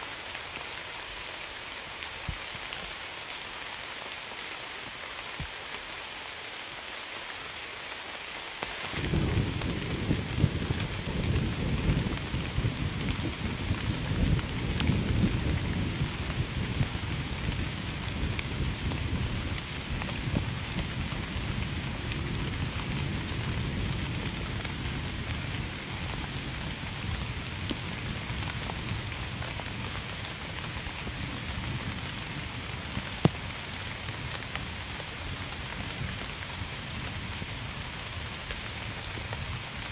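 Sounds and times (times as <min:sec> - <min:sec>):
steady rain: 0:00.0 - 0:39.9
thunder rumbling: 0:08.8 - 0:34.2.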